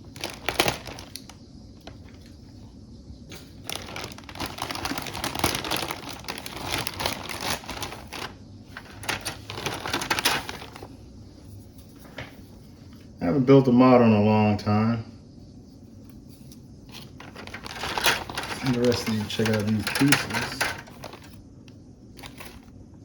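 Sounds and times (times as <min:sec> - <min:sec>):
plastic wrapping crinkling: 0:00.0 - 0:02.4, 0:03.4 - 0:11.0, 0:16.9 - 0:21.4, 0:22.2 - 0:22.7.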